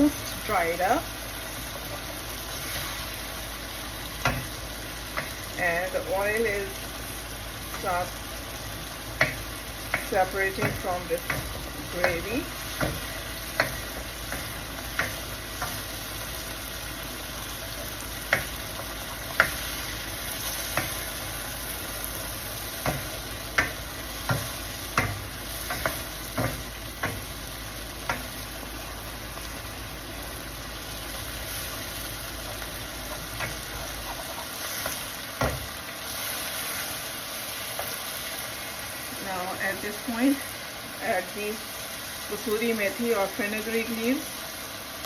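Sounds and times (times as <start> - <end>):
gravy sizzling in oil in a pan: 0.0 - 45.0
spatula scraping and knocking on pan: 4.2 - 5.4, 9.2 - 16.0, 18.3 - 18.6, 19.3 - 21.1, 22.7 - 27.3, 33.1 - 35.7.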